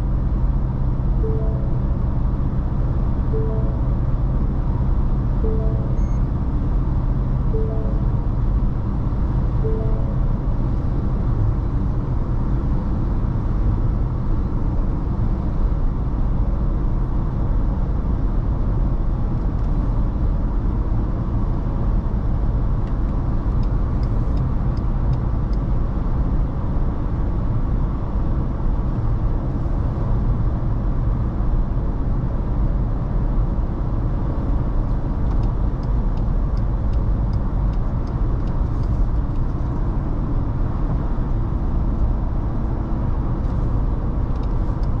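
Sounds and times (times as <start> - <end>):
engine and road noise drone: 0.0 - 45.0
turn signal ticking: 35.2 - 39.8.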